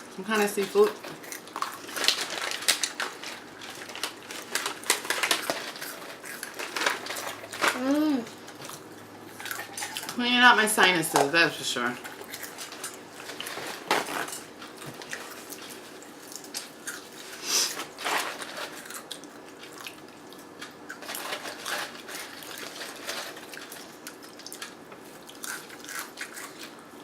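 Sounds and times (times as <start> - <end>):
wet chewing of snacks: 0.4 - 10.2, 11.9 - 27.0.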